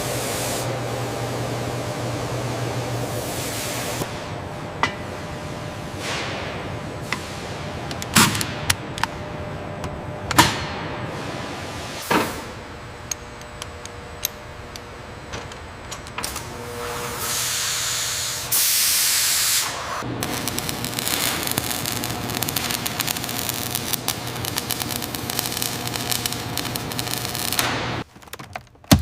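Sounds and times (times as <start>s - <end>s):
loud hiss: 17.2s - 28.0s.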